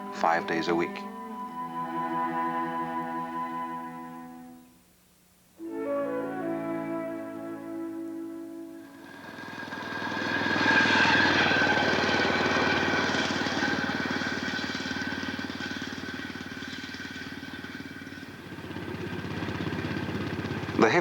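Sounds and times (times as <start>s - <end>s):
music: 0.0s - 4.9s, 5.6s - 10.2s
small engine puttering: 8.8s - 21.0s.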